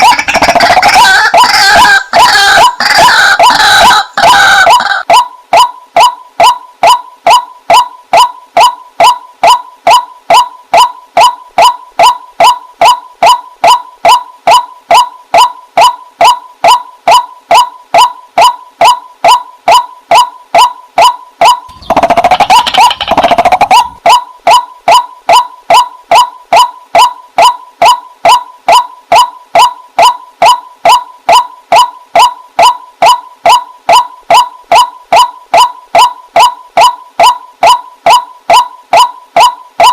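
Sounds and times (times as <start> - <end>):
waterhen calling: 0.0 - 6.2, 21.6 - 25.0.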